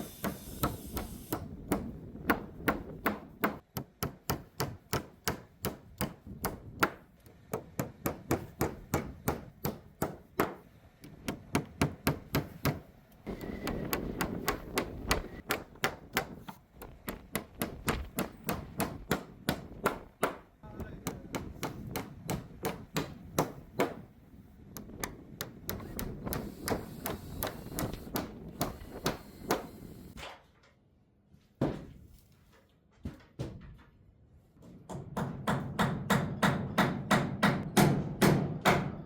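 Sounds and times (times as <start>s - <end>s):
hammer driving nails into wood: 0.0s - 24.1s, 24.8s - 30.4s.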